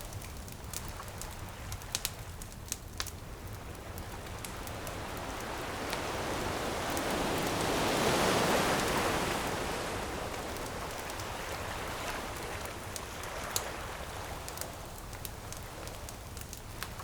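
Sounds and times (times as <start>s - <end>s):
wood fire crackling: 0.0s - 17.0s
ocean wave on shore: 4.5s - 14.9s.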